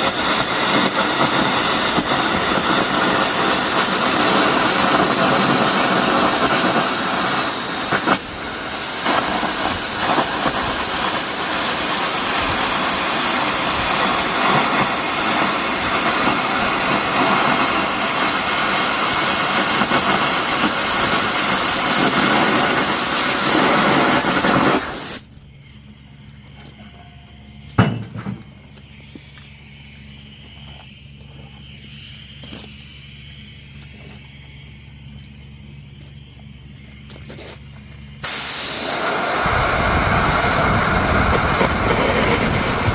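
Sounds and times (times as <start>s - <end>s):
air arc gouging hiss on steel: 0.0s - 26.0s, 27.4s - 35.2s, 36.6s - 42.9s
faint steady hum: 25.2s - 42.9s
sharp knock: 27.8s - 28.4s.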